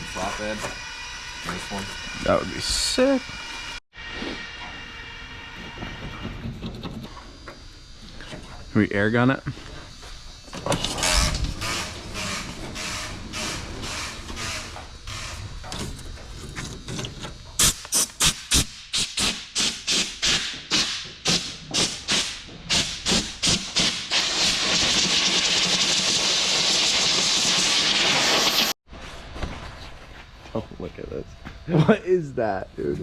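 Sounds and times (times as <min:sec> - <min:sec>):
compressed air blow gun hissing: 0:22.1 - 0:28.8.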